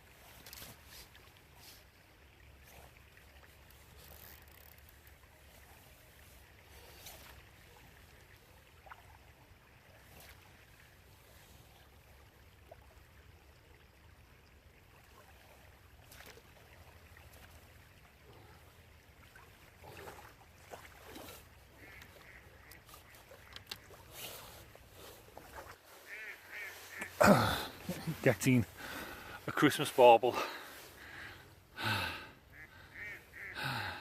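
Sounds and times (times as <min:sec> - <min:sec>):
flowing river water hiss: 0:00.0 - 0:34.0
faint clicks: 0:21.8 - 0:24.0.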